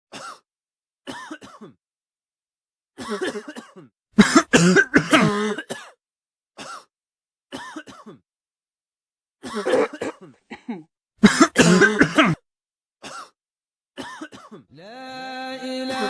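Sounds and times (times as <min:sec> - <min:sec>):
person coughing: 0:01.1 - 0:01.8, 0:03.0 - 0:06.0, 0:07.5 - 0:08.2, 0:09.4 - 0:12.4, 0:13.0 - 0:13.4, 0:14.0 - 0:14.7.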